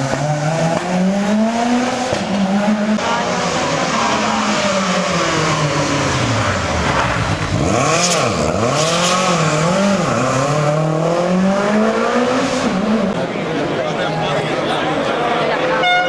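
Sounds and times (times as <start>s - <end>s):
rally car engine revving: 0.0s - 15.7s.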